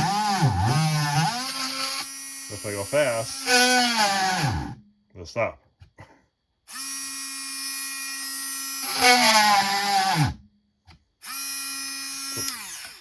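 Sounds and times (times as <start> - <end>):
rotary tool drilling into wood: 0.0 - 4.8, 6.7 - 10.4, 11.2 - 13.0.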